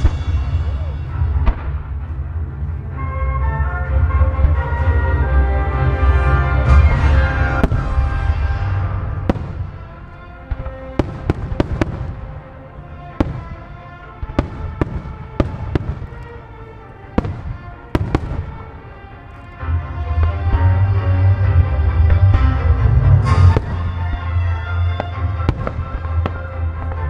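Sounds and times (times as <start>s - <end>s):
fireworks bangs: 6.6s - 19.5s, 23.2s - 27.0s
music with heavy bass: 19.8s - 27.0s.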